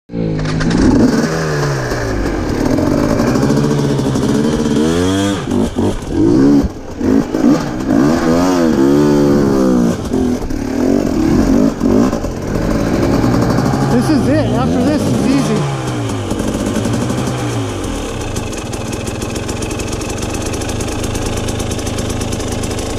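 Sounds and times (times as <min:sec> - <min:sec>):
dirt bike engine revving: 0:00.1 - 0:22.9.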